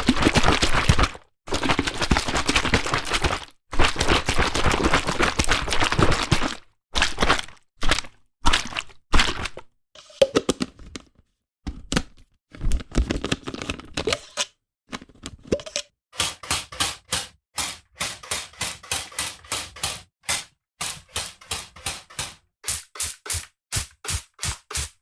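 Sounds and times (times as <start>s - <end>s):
squirt bottle squirting: 22.6s - 25.0s.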